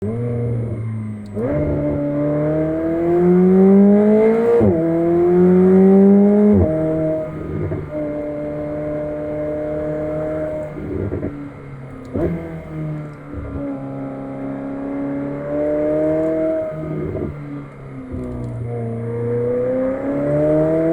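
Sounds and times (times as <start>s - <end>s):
car engine accelerating hard: 0.0s - 20.9s.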